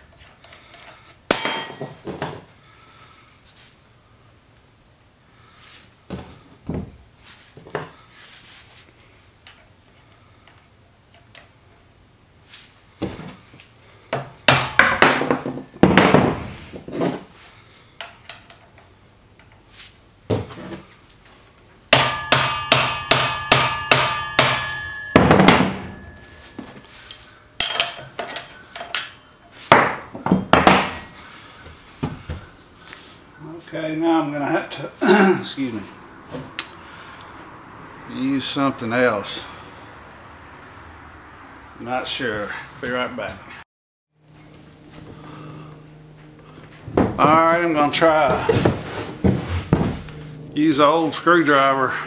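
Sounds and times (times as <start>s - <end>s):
hammer striking metal: 1.3s - 2.3s, 21.9s - 28.0s.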